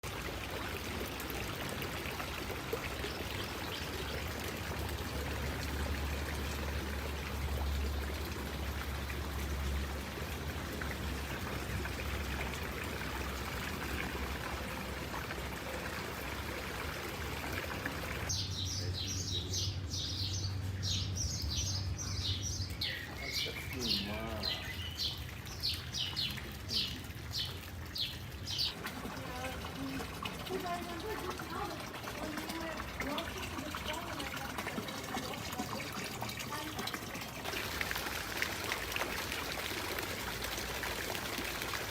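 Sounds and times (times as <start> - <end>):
fountain water splashing: 0.0 - 18.3, 22.2 - 41.9
small birds chirping: 18.2 - 28.8.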